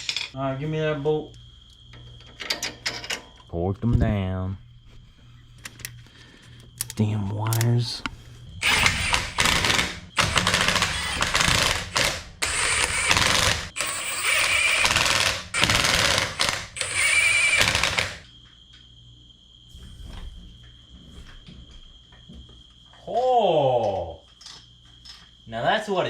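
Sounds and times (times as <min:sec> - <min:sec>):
impact wrench rattling: 0:08.6 - 0:18.2.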